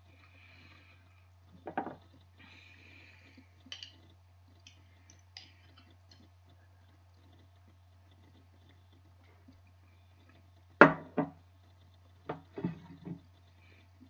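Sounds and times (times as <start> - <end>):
soft breath: 0.0 - 1.4, 2.4 - 3.7
low electrical hum: 0.0 - 14.0
chewing clicks: 2.0 - 10.8.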